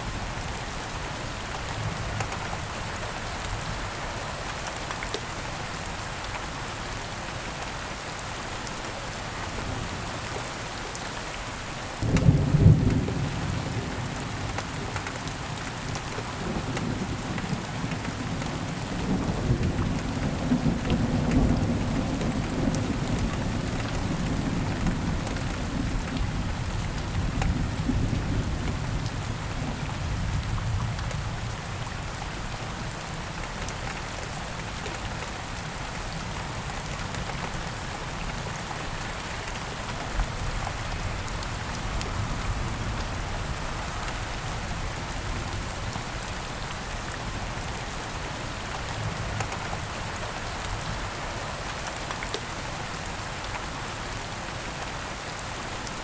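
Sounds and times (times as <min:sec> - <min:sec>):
heavy rain falling: 0:00.0 - 0:56.0
thunderclap and rolling thunder: 0:12.0 - 0:14.9.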